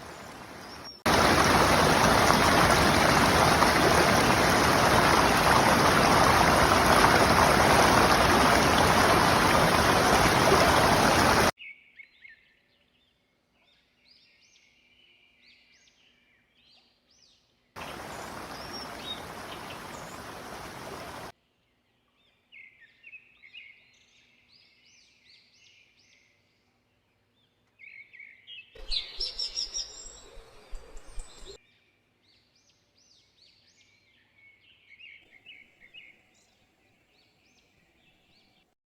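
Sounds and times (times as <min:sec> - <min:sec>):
rushing water: 0:00.0 - 0:11.5, 0:17.8 - 0:21.3
songbird chirps: 0:00.0 - 0:38.8.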